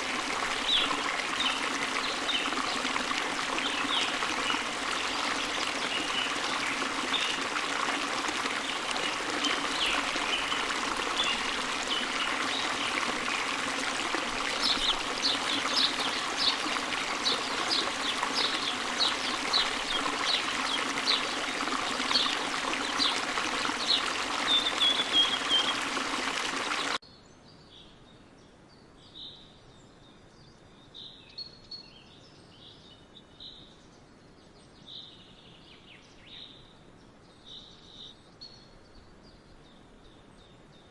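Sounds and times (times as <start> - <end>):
running water: 0.0 - 27.0.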